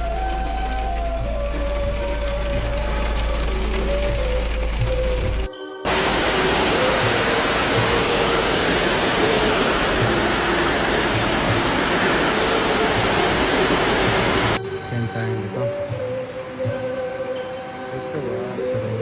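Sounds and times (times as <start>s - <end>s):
floodwater rushing: 5.9s - 19.0s.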